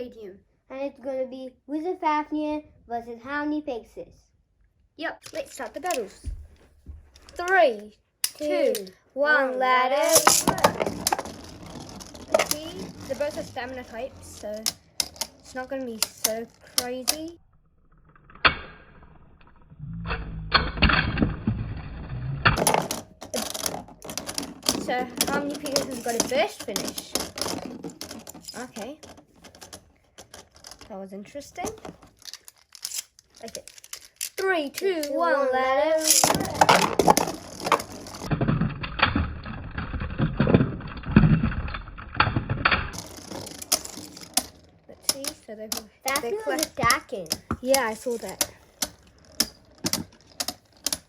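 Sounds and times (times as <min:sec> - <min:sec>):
spinning tops whirring: 0:10.0 - 0:17.3, 0:22.6 - 0:30.8, 0:31.8 - 0:38.3, 0:42.9 - 0:45.4, 0:46.0 - 0:51.0.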